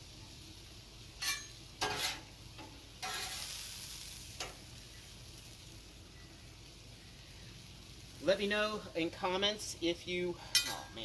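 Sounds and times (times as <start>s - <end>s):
meat sizzling on a griddle: 0.0s - 11.0s
scraping on a griddle: 1.1s - 5.5s.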